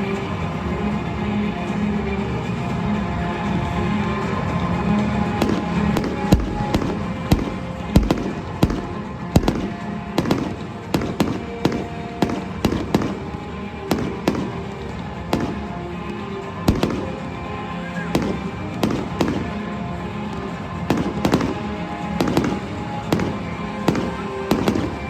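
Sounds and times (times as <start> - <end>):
music playing: 0.0 - 25.0
fireworks bursting: 4.9 - 25.0
deep firework booms: 5.4 - 14.6, 16.7 - 17.2.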